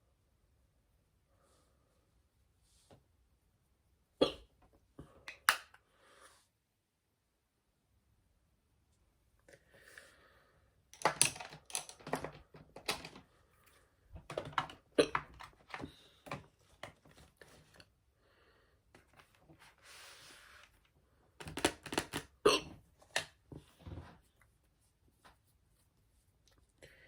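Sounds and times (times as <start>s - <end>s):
makeup containers clicking: 11.0s - 13.2s, 14.2s - 17.0s, 21.4s - 22.3s
soft rustle: 23.7s - 26.8s.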